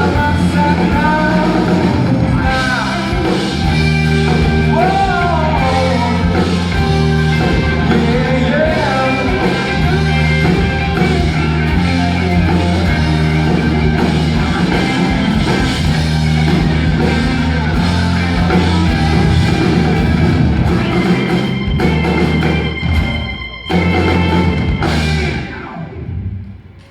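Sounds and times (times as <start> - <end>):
live rock band playing: 0.0 - 26.7.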